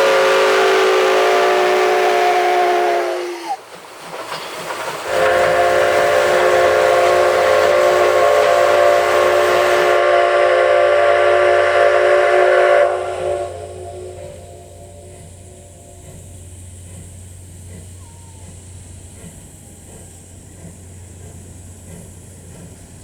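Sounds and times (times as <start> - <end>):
steam locomotive whistle: 0.0 - 3.6, 5.1 - 15.9
steam hiss: 0.0 - 23.0.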